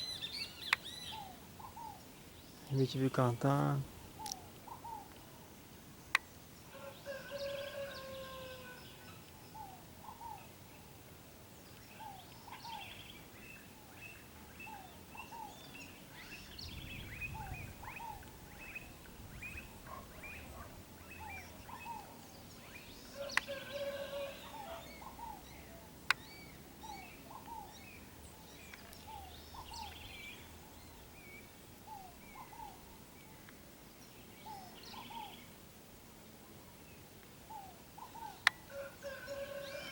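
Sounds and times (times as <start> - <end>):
birds chirping: 0.0 - 11.0, 11.6 - 35.6.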